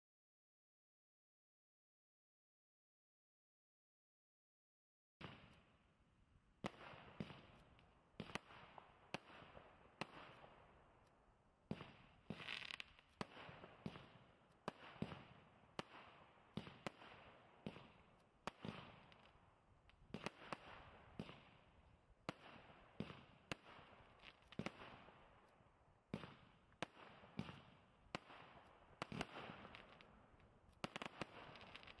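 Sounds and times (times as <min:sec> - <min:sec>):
fireworks bangs with crackle: 0:05.2 - 0:05.7, 0:06.6 - 0:10.8, 0:11.7 - 0:19.4, 0:20.1 - 0:25.3, 0:26.0 - 0:32.0.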